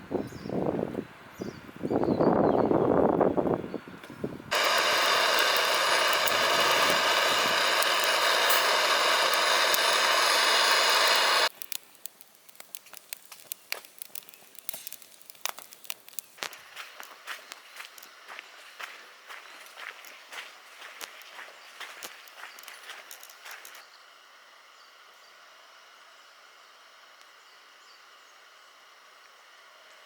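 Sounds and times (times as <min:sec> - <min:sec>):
charcoal fire crackling: 0:04.5 - 0:23.8
charcoal grill sizzling: 0:04.5 - 0:23.8.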